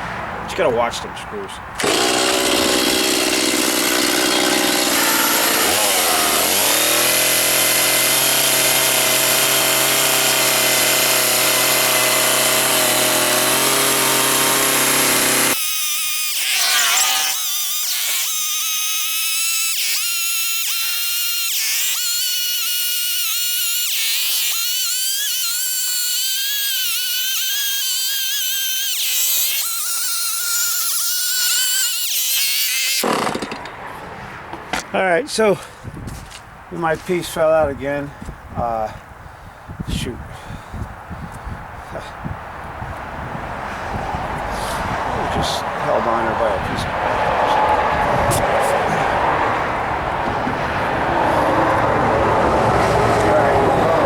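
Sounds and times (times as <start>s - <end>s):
chainsaw cutting log: 1.8s - 33.8s, 45.4s - 54.0s.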